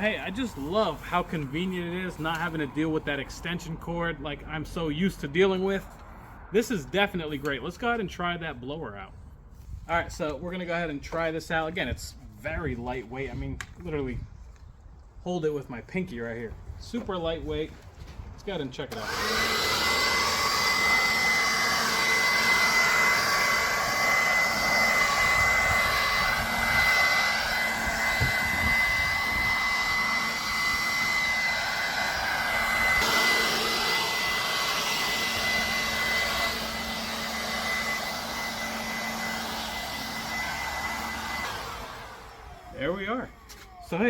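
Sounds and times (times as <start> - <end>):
leaf blower whining: 18.9 - 44.0.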